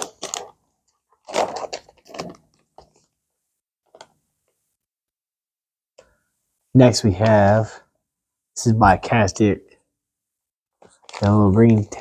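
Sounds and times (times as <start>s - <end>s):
packaging rustling: 0.0s - 3.2s, 10.8s - 12.0s.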